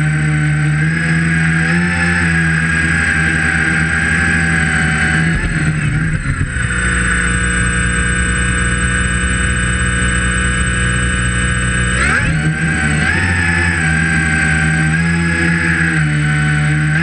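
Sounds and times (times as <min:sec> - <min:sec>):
drone motors and propellers whirring: 0:00.0 - 0:17.0.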